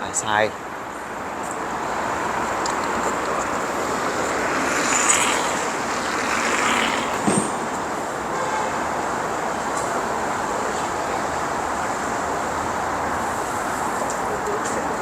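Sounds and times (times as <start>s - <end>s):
street traffic hiss: 0.0s - 15.0s
car passing: 0.6s - 8.3s.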